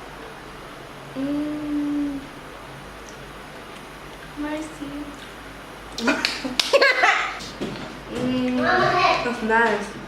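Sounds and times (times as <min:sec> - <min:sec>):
electric fan hissing: 0:00.0 - 0:10.0
person humming mmm: 0:01.1 - 0:02.3.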